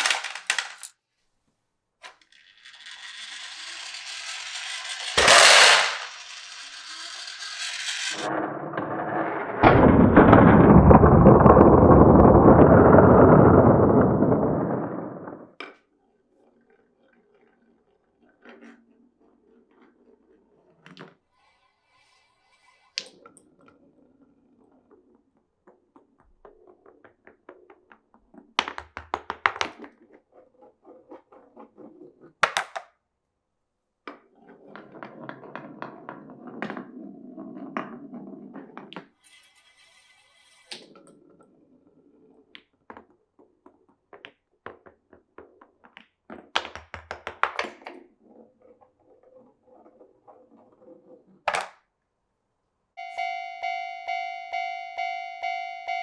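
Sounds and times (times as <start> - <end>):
marbles knocking on blocks: 0.0 - 0.9, 2.2 - 8.3, 9.5 - 15.5, 28.5 - 30.0, 31.9 - 32.9, 46.3 - 48.4, 51.5 - 51.8
marbles rolling on wood: 0.0 - 0.9, 2.0 - 15.8, 17.6 - 33.0, 34.1 - 51.9
high-pitched rattle: 2.5 - 8.3.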